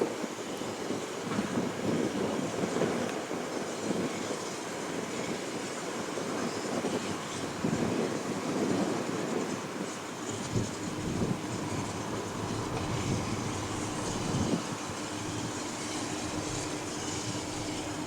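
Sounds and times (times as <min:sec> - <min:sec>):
train rumbling on track: 0:00.0 - 0:18.0
wheels knocking on track: 0:09.9 - 0:18.0.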